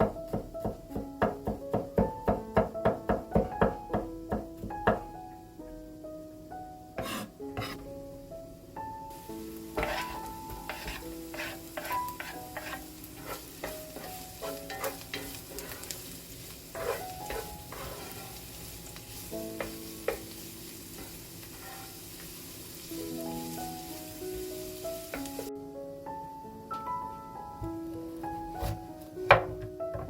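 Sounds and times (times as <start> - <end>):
vegetables sizzling in a frying pan: 0.0 - 25.5
soft piano music: 0.0 - 30.0
utensil scraping and tapping pan: 7.0 - 7.9, 9.8 - 16.0, 16.7 - 18.4, 21.0 - 22.0.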